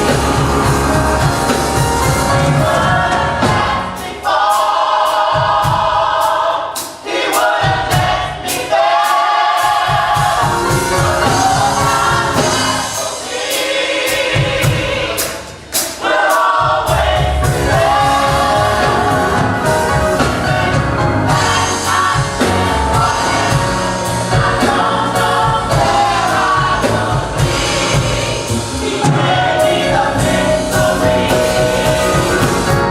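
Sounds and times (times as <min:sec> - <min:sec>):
bass line: 0:00.0 - 0:03.8, 0:17.0 - 0:32.9
drums with cymbal hits: 0:00.0 - 0:32.9
gospel choir singing: 0:00.0 - 0:32.9.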